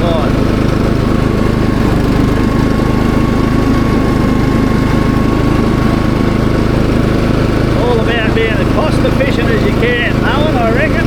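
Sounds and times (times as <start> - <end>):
lawn mower engine running: 0.0 - 11.0.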